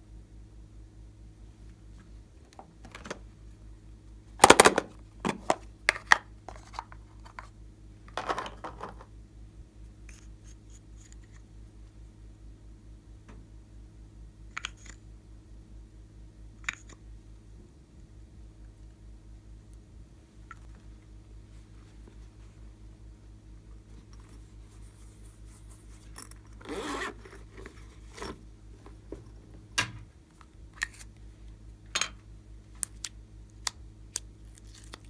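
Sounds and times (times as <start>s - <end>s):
steady low hum: 0.0s - 35.0s
crackly scrapes and clicks from hands: 33.7s - 35.0s.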